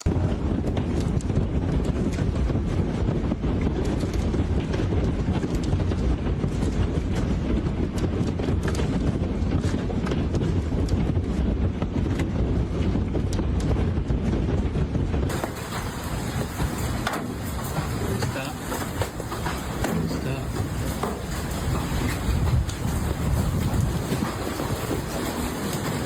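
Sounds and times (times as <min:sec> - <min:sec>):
wind buffeting microphone: 0:00.0 - 0:26.0
hailstones striking hard surfaces: 0:15.3 - 0:26.0.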